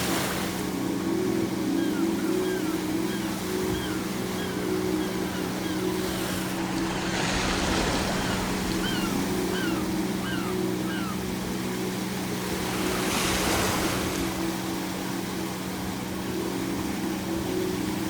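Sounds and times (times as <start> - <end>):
ocean waves breaking: 0.0 - 18.0
gulls calling: 1.0 - 14.5.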